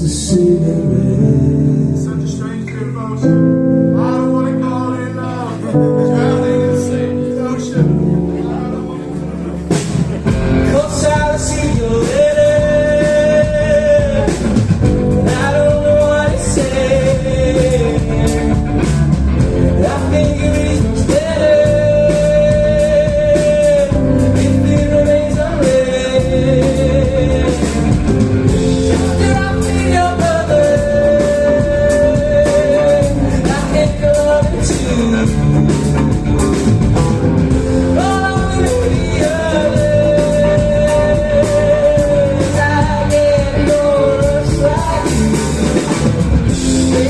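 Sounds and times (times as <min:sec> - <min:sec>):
rock band playing live: 0:00.0 - 0:47.0
person singing long notes: 0:10.5 - 0:36.5, 0:37.5 - 0:47.0.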